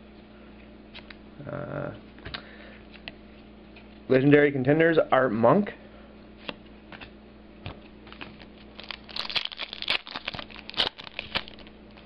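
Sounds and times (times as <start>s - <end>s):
cards crinkling and clicking: 7.7s - 12.0s.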